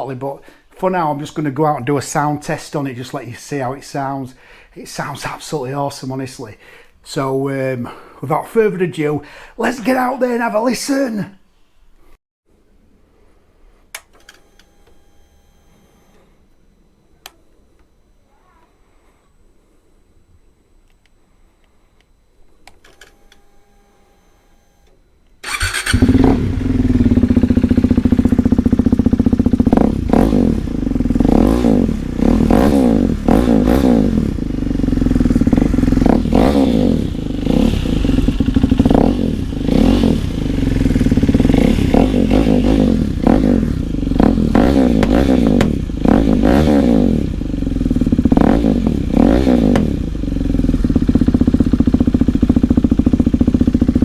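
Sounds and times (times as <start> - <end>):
motorcycle engine revving: 25.4 - 54.0
exhaust pops and bangs: 44.6 - 45.9, 49.7 - 50.0.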